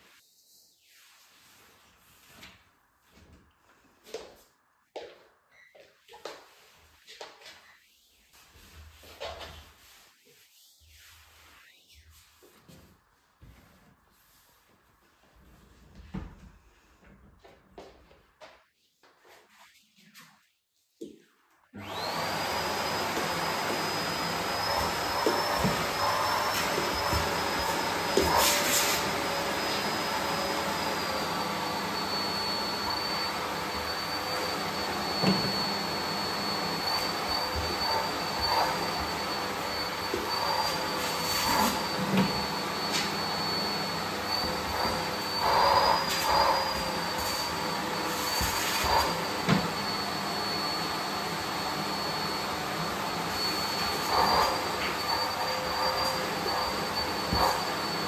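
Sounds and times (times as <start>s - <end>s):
vacuum cleaner running: 21.8s - 58.0s.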